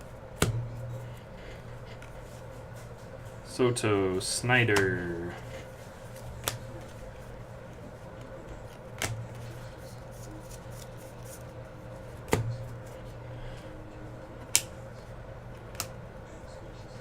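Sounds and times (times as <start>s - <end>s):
steady low hum: 0.0s - 17.0s
cards clicking and tapping: 0.4s - 1.2s, 6.1s - 7.0s, 7.7s - 11.5s, 12.1s - 13.2s, 14.4s - 14.8s, 15.5s - 16.0s.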